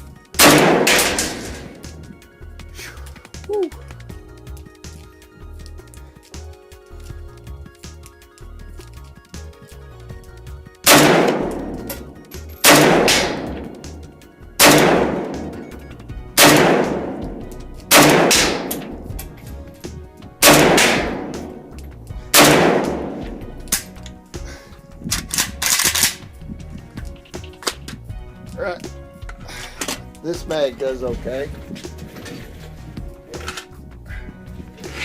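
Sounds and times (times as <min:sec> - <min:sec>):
rifle shots echoing: 0:00.4 - 0:02.1, 0:10.8 - 0:19.4, 0:20.4 - 0:24.0
light sharp cracks: 0:16.4 - 0:24.2, 0:25.1 - 0:26.3.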